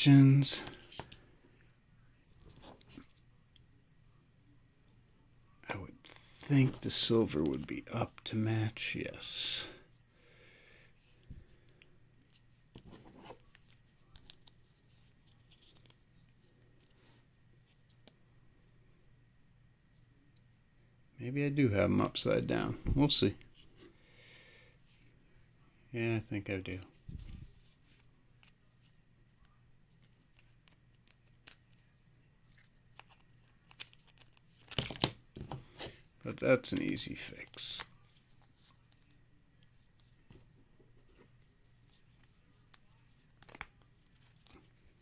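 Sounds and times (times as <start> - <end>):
faint steady hum: 0.0 - 45.0.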